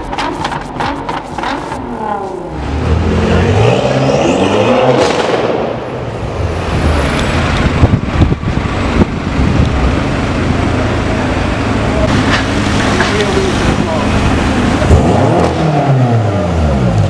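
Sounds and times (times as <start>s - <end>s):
exhaust crackles and pops: 0.0s - 2.7s, 12.0s - 15.6s
car engine revving: 0.0s - 17.0s.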